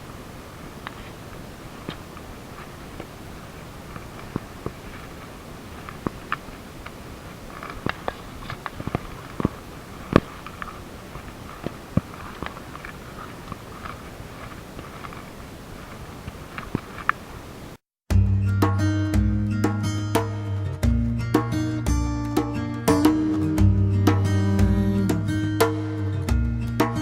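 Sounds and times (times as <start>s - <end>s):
leaves and twigs crunching underfoot: 0.0s - 17.8s.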